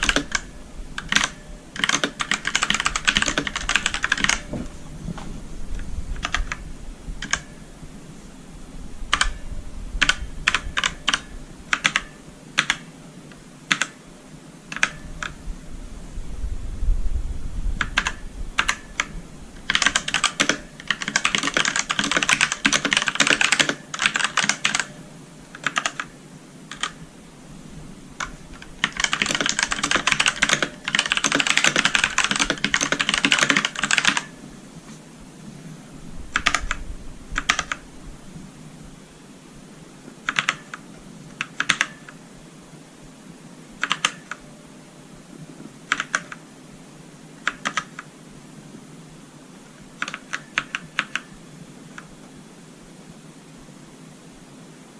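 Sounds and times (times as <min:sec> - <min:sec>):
mechanical keyboard typing: 0:00.0 - 0:04.5, 0:06.2 - 0:06.6, 0:07.2 - 0:07.6, 0:09.1 - 0:09.4, 0:10.0 - 0:12.9, 0:13.7 - 0:14.0, 0:14.7 - 0:15.4, 0:17.8 - 0:19.1, 0:19.7 - 0:24.9, 0:25.5 - 0:27.0, 0:28.2 - 0:34.3, 0:36.3 - 0:36.8, 0:37.4 - 0:37.8, 0:40.2 - 0:40.8, 0:41.4 - 0:42.2, 0:43.8 - 0:44.4, 0:45.9 - 0:46.4, 0:47.4 - 0:48.1, 0:50.0 - 0:51.3.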